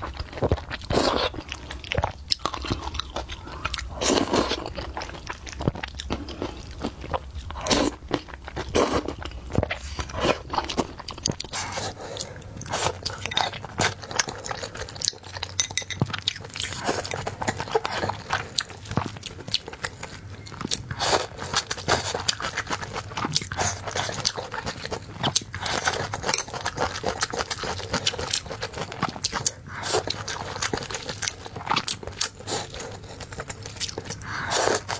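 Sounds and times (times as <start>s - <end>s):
person chewing crunchy food: 0.0s - 34.9s.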